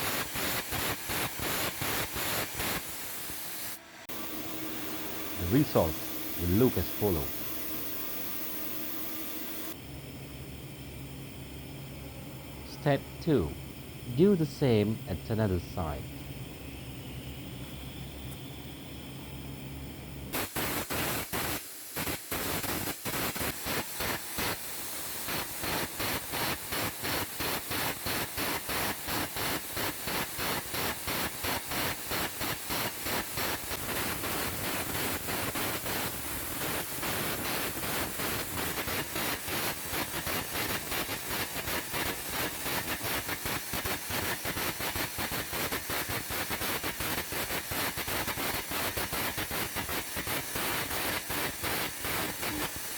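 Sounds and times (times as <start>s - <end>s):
arc gouging stuttering hiss: 0.9s - 9.8s.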